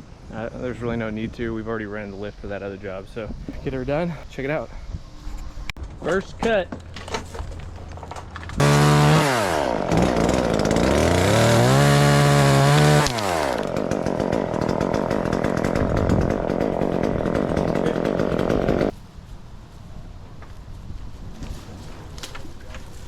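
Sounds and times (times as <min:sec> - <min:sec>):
chainsaw cutting wood: 0:08.5 - 0:19.0.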